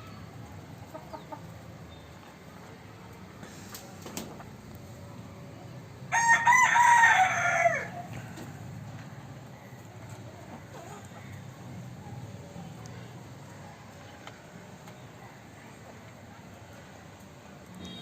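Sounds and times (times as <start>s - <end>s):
rooster crowing: 6.1s - 8.1s.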